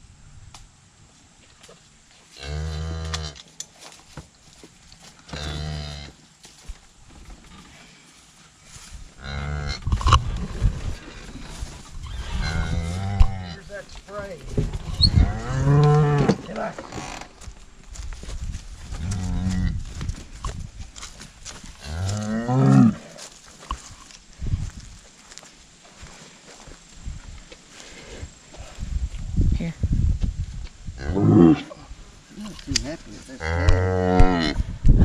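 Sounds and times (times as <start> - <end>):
cattle mooing: 21.9 - 23.1.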